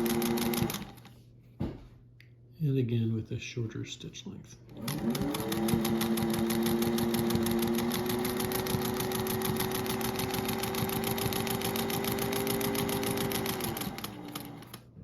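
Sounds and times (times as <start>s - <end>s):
sewing machine stitching: 0.0s - 1.1s, 4.7s - 14.9s.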